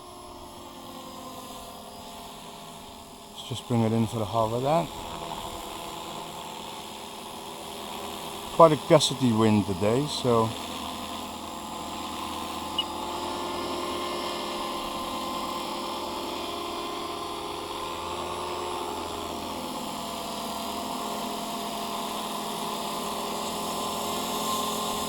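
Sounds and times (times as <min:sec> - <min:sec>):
model helicopter motor and rotors whine: 0:00.0 - 0:25.0.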